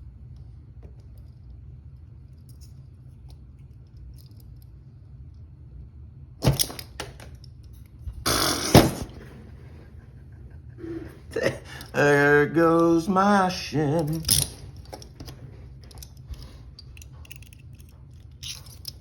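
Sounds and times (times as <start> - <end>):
steady low hum: 0.0 - 19.0
small clicks of handcuffs: 0.3 - 5.4, 14.0 - 19.0.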